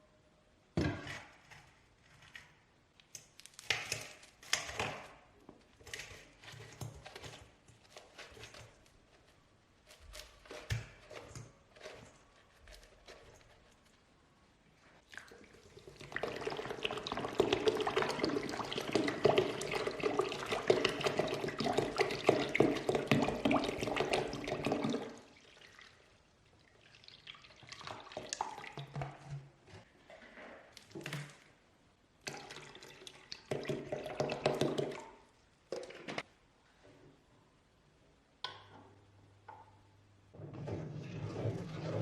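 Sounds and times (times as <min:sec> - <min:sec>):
liquid pouring and splashing: 0:15.0 - 0:29.4, 0:32.2 - 0:36.3.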